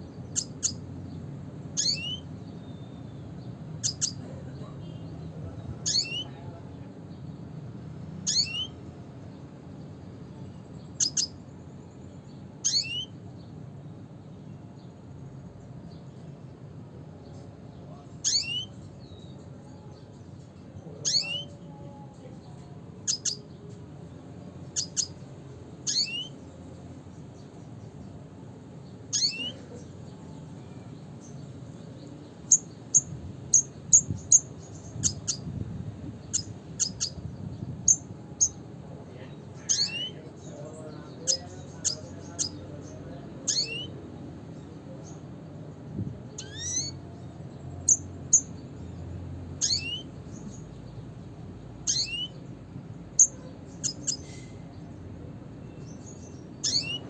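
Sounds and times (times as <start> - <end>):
bird chips and whistles: 1.8 - 2.2, 5.9 - 6.3, 8.3 - 8.8, 12.6 - 13.1, 18.2 - 18.7, 25.9 - 26.3, 29.1 - 29.6, 43.5 - 43.9, 46.4 - 47.0, 49.6 - 50.1, 51.9 - 52.4, 56.6 - 57.0.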